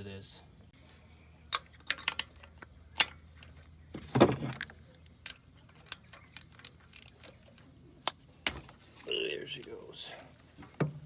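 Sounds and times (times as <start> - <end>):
metal tools clinking against engine: 1.5 - 3.7, 4.3 - 7.7.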